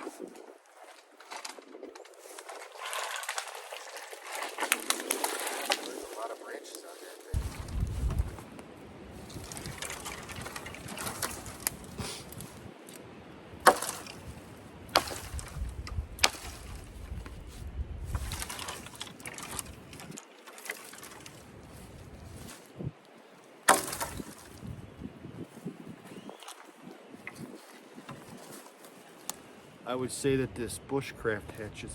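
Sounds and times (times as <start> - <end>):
hatchet chopping wood: 13.6 - 14.2, 14.9 - 15.4, 16.2 - 16.7, 23.7 - 24.3.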